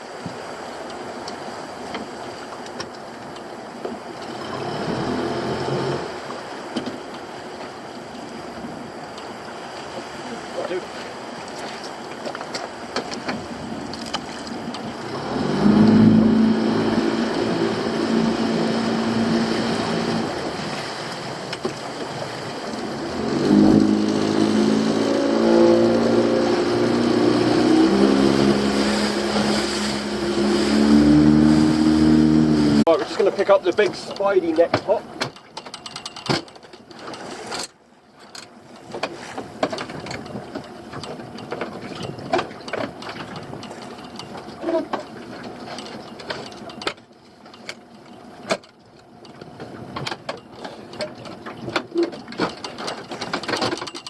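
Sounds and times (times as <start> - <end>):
water washing: 0.0 - 35.6
boat motor humming: 0.0 - 37.1, 37.7 - 54.0
wind: 0.0 - 54.0.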